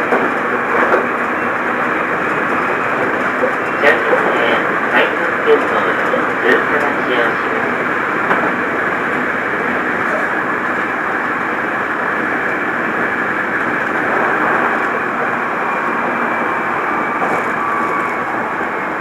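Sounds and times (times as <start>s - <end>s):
faint steady whine: 0.0s - 19.0s
train wheels rumbling on rails: 0.0s - 19.0s.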